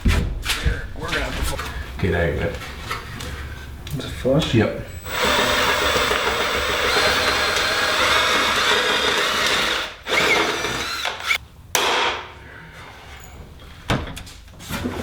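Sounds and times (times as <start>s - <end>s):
drill bit squealing: 4.8s - 11.4s
electric drill boring through metal: 4.9s - 11.4s.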